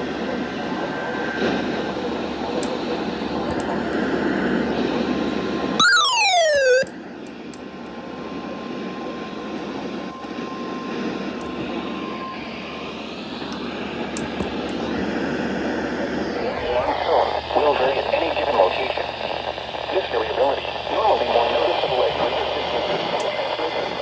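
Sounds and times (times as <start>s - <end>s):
whistle falling in pitch: 5.8s - 6.9s
radio static hiss: 16.5s - 24.0s.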